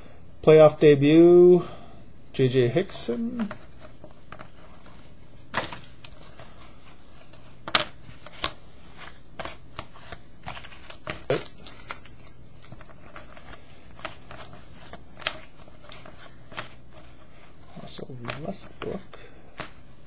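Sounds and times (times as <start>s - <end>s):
steady low hum: 0.0s - 20.0s
trading cards flipped by hand: 3.4s - 17.3s, 18.2s - 19.9s.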